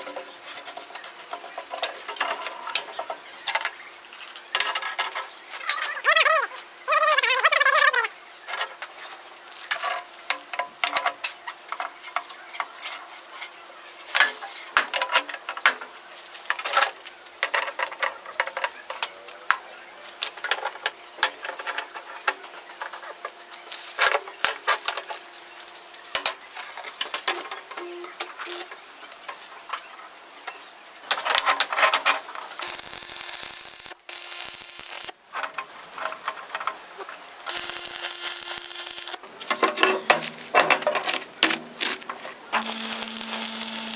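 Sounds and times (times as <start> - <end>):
metal clicks and scraping: 31.1 - 43.9
steady hiss: 32.6 - 35.1, 37.4 - 39.4, 41.7 - 43.9.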